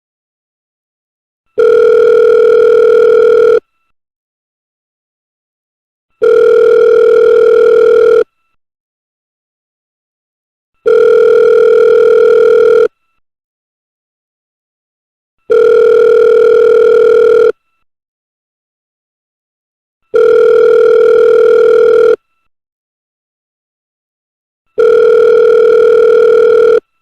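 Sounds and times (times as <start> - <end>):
telephone ringing tone: 1.5 - 3.6, 6.2 - 8.3, 10.8 - 12.9, 15.4 - 17.6, 20.1 - 22.2, 24.8 - 26.9.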